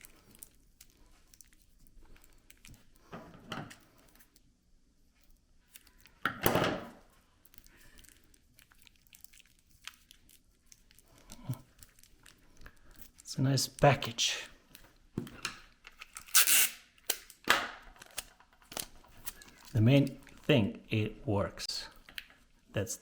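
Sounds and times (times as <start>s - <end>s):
wrapping material crinkling: 0.0s - 3.1s, 3.8s - 6.3s, 7.0s - 20.6s
wrapping material rasp: 16.2s - 17.0s.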